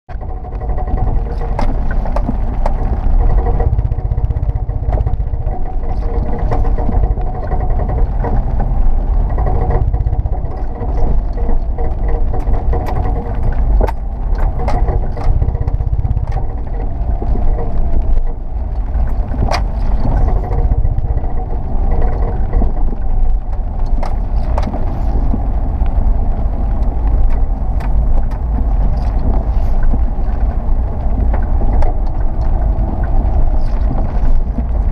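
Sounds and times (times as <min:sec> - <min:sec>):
car engine rumble: 0:00.1 - 0:34.9.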